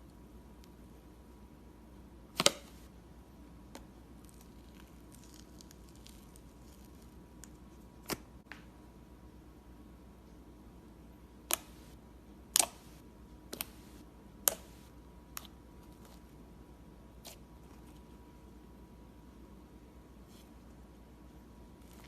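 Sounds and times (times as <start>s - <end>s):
faint slime crackles: 4.2s - 8.2s.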